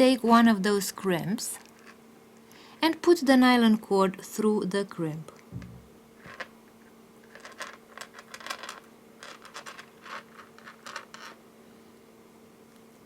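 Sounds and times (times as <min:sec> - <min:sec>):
cord scratching and rustling: 0:07.2 - 0:11.4.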